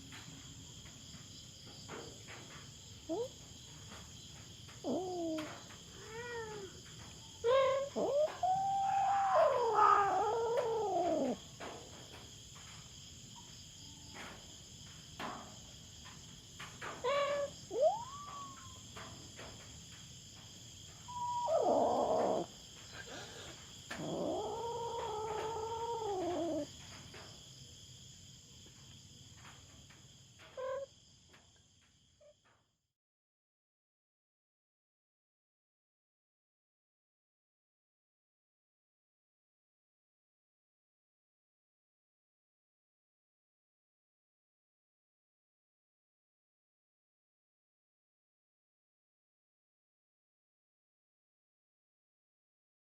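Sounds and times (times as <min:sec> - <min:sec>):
high insect chorus: 0:00.0 - 0:32.6
cat meowing: 0:04.8 - 0:06.8, 0:07.4 - 0:11.4, 0:17.0 - 0:18.8, 0:21.1 - 0:22.5, 0:23.9 - 0:26.7
cat yowling: 0:04.8 - 0:11.4, 0:17.0 - 0:19.1, 0:21.1 - 0:26.7, 0:30.6 - 0:30.9.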